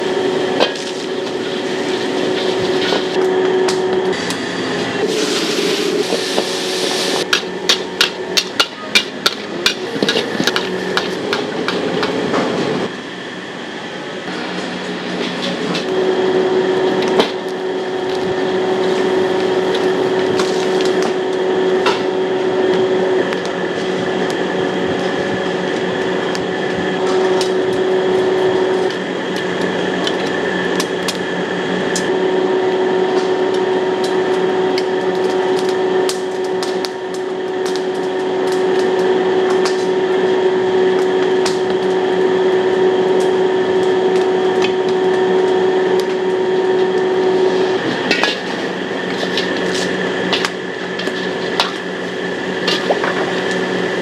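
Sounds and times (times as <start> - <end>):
wok stove hum: 0.0 - 54.0
metal spatula striking wok: 7.3 - 11.5, 48.1 - 48.5.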